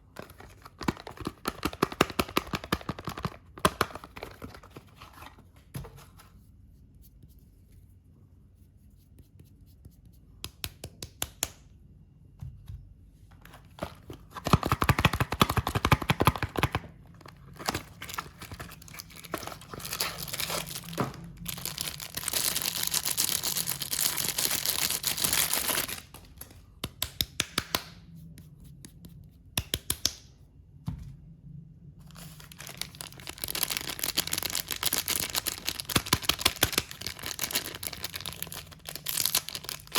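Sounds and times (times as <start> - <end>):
packaging tearing and crinkling: 14.4 - 26.4, 32.2 - 39.9.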